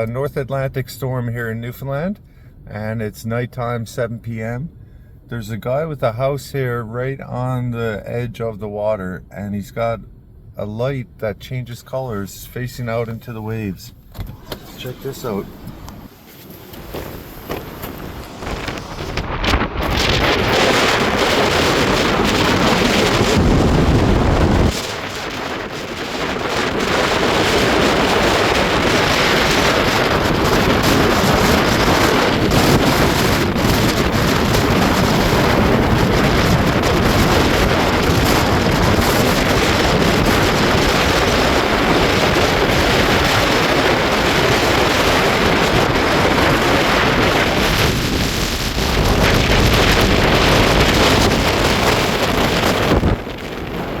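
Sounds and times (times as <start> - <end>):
heavy surf: 14.6 - 54.0
wind buffeting microphone: 15.5 - 54.0.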